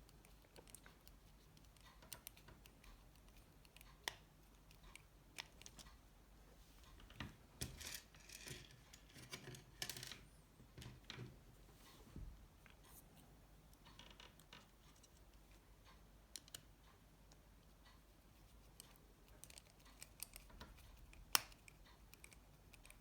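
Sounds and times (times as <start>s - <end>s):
small clicks and ticks: 0.0s - 6.0s, 13.7s - 23.0s.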